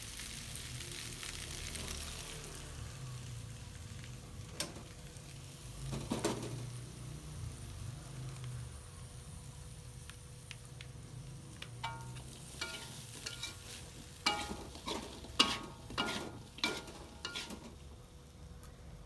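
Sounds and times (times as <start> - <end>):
food frying: 0.0 - 18.5
metal utensil scraping a pan: 11.8 - 17.8.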